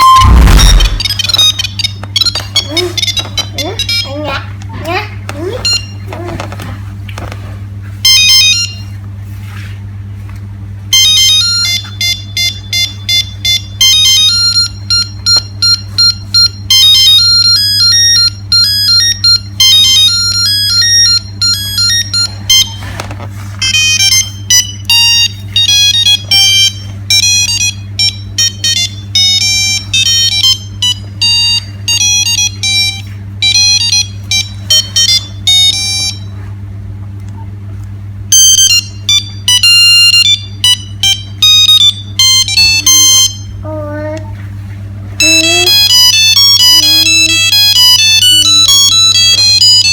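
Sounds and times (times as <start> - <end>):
mobile phone beeping ringtone: 0.0 - 4.1, 11.0 - 22.7, 23.6 - 36.3, 38.3 - 43.5, 45.2 - 49.9
steady low hum: 0.0 - 49.9.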